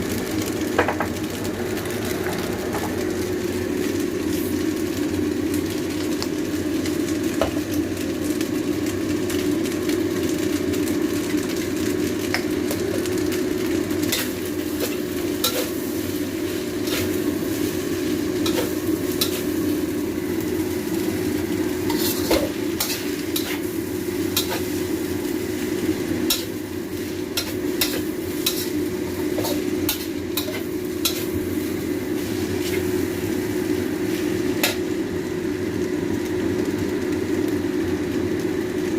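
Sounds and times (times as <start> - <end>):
noodles sizzling in a pan: 0.0 - 38.9
utensil scraping a pan: 21.9 - 23.7.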